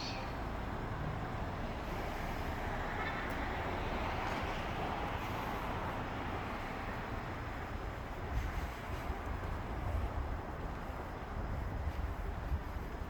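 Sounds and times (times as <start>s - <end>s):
passing vehicle rumble: 0.0s - 9.1s.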